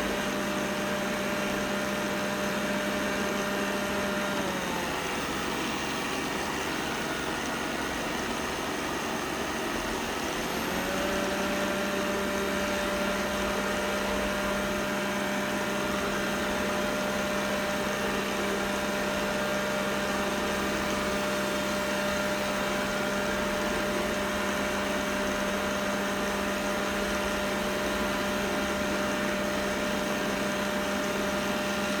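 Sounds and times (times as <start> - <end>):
robot vacuum buzzing: 0.2 - 22.7.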